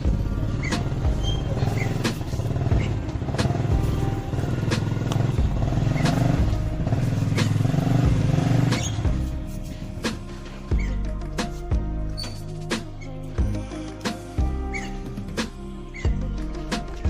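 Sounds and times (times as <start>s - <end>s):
engine running steadily: 0.0s - 10.2s.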